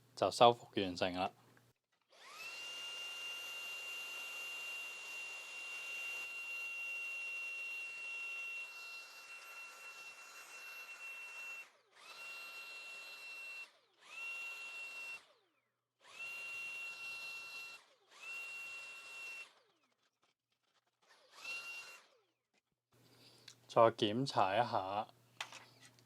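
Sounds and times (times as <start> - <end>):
electric screwdriver motor whine: 2.0 - 22.6.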